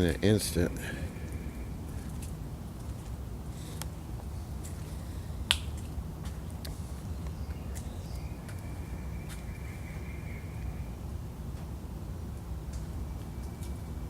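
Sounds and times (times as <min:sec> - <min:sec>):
low outdoor rumble: 0:00.0 - 0:14.0
faint ticks: 0:00.7 - 0:10.8, 0:11.5 - 0:14.0
faint high-pitched tone: 0:07.4 - 0:11.3.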